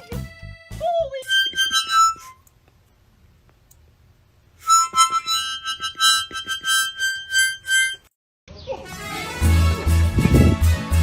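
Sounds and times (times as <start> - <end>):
quick melody of pitched notes: 0.0 - 2.4, 4.6 - 8.0.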